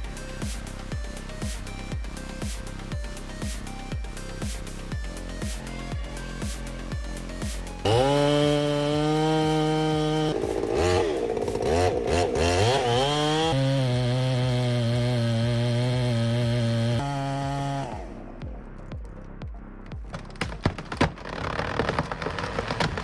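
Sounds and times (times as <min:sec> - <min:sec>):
background music with a beat: 0:00.0 - 0:13.4, 0:17.3 - 0:20.7
chainsaw running at high revs: 0:05.0 - 0:18.2.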